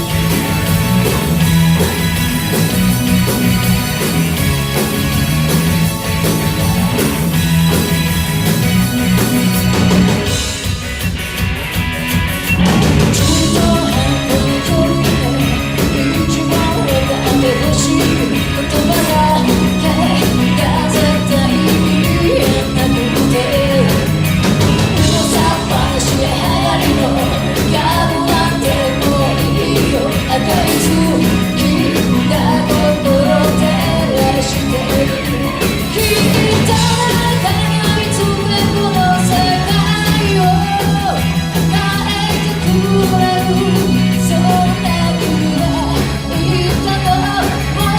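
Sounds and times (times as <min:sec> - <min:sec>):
rock band playing live: 0:00.0 - 0:47.9
lead singer singing: 0:13.1 - 0:47.9.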